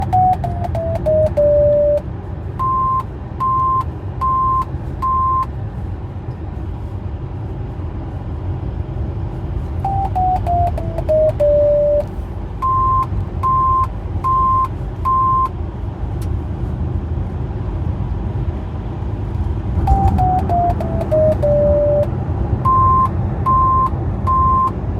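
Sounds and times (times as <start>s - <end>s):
electronic alarm tones: 0.0s - 2.0s, 2.6s - 5.4s, 9.8s - 15.5s, 19.9s - 22.1s, 22.7s - 24.7s
higher beeps: 0.0s - 2.0s, 2.6s - 5.5s, 9.8s - 15.5s, 19.9s - 22.1s, 22.7s - 24.7s
steady low rumble: 0.0s - 24.9s.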